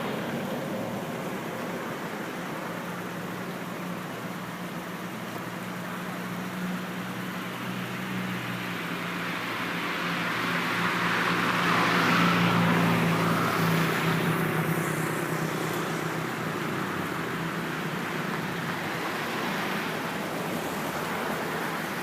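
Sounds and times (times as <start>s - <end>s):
low engine hum: 0.0s - 22.0s
vehicle passing rush: 6.8s - 22.0s.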